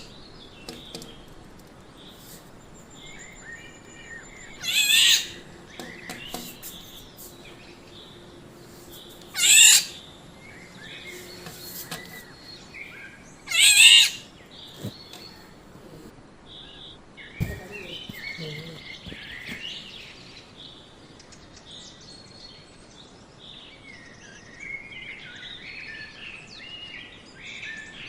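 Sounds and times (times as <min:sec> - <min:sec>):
faint bird notes: 0:00.0 - 0:16.1
harsh bird calls: 0:00.0 - 0:16.1, 0:16.8 - 0:21.0.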